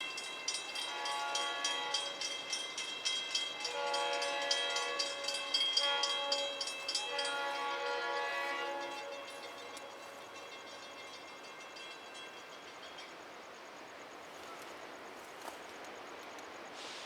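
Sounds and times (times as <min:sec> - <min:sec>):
locomotive air horn blasts: 0:00.9 - 0:02.2, 0:03.6 - 0:10.0.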